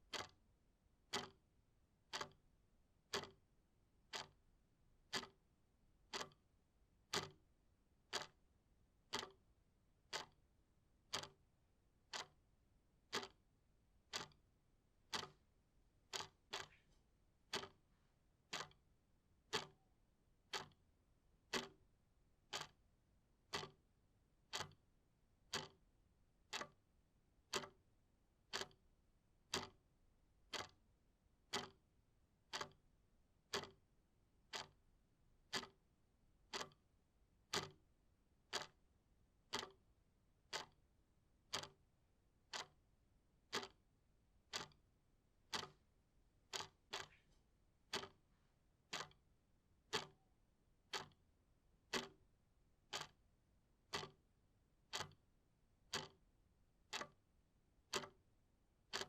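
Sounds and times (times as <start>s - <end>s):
clock ticking: 0.1s - 0.4s, 1.1s - 1.4s, 2.1s - 2.4s, 3.1s - 3.4s, 4.1s - 4.4s, 5.1s - 5.4s, 6.1s - 6.4s, 7.1s - 7.4s, 8.1s - 8.4s, 9.1s - 9.4s, 10.1s - 10.4s, 11.1s - 11.4s, 12.1s - 12.4s, 13.1s - 13.4s, 14.1s - 14.4s, 15.1s - 15.4s, 16.1s - 16.8s, 17.5s - 17.8s, 18.5s - 18.8s, 19.5s - 19.8s, 20.5s - 20.8s, 21.5s - 21.8s, 22.5s - 22.8s, 23.5s - 23.8s, 24.5s - 24.8s, 25.5s - 25.8s, 26.5s - 26.8s, 27.5s - 27.8s, 28.5s - 28.8s, 29.5s - 29.8s, 30.5s - 30.8s, 31.5s - 31.8s, 32.5s - 32.8s, 33.5s - 33.8s, 34.5s - 34.8s, 35.5s - 35.8s, 36.5s - 36.8s, 37.5s - 37.8s, 38.5s - 38.8s, 39.5s - 39.8s, 40.5s - 40.8s, 41.5s - 41.8s, 42.5s - 42.8s, 43.5s - 43.8s, 44.5s - 44.8s, 45.5s - 45.8s, 46.5s - 47.2s, 47.9s - 48.2s, 48.9s - 49.2s, 49.9s - 50.2s, 50.9s - 51.2s, 51.9s - 52.2s, 52.9s - 53.2s, 53.9s - 54.2s, 54.9s - 55.2s, 55.9s - 56.2s, 56.9s - 57.2s, 57.9s - 58.2s.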